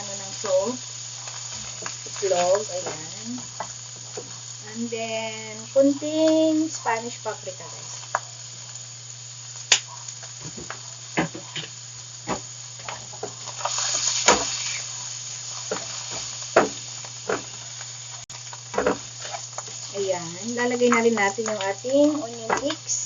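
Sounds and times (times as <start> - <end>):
food sizzling in a pan: 0.0 - 23.0.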